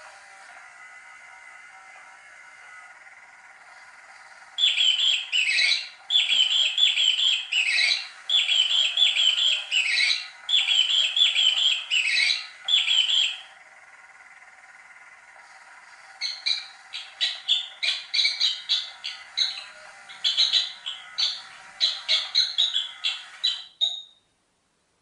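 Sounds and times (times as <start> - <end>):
faint steady hum: 0.0 - 25.0
toy electronic chirps and squeaks: 0.7 - 24.2.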